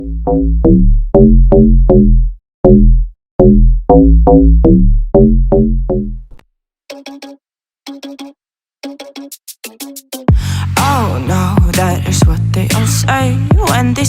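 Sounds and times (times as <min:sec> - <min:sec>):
drum-machine beat: 0:00.0 - 0:06.2, 0:09.2 - 0:14.0
synth notes with deep bass: 0:00.0 - 0:06.4.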